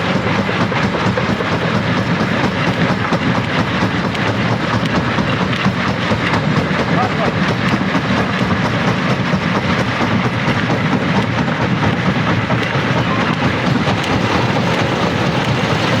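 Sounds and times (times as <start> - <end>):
rock crusher running: 0.0 - 16.0.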